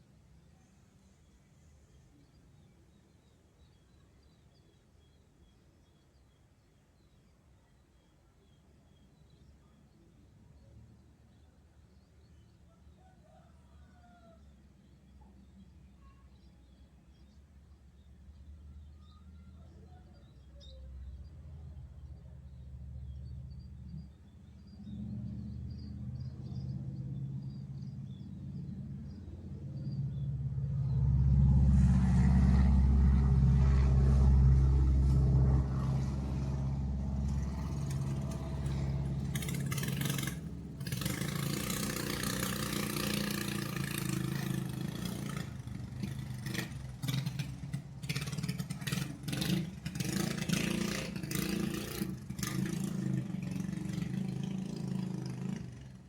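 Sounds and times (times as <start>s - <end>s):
motor engine running: 22.5s - 56.0s
dense rattling clatter: 37.3s - 51.8s.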